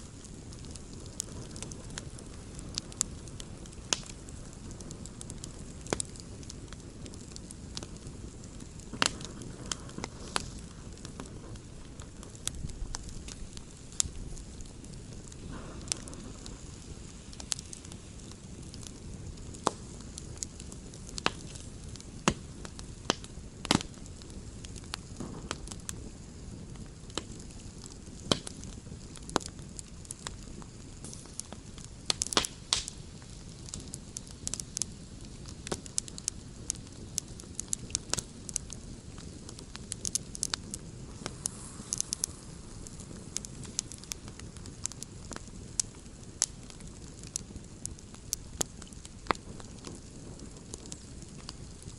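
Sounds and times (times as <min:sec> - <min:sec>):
campfire crackling and popping: 0:00.0 - 0:51.9.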